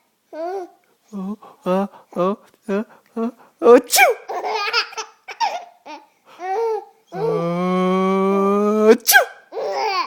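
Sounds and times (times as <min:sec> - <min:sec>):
person sneezing: 0:03.9 - 0:04.3, 0:09.0 - 0:09.4
baby laughing: 0:04.1 - 0:07.4, 0:09.5 - 0:10.0
person drawing out aaah: 0:07.2 - 0:09.3.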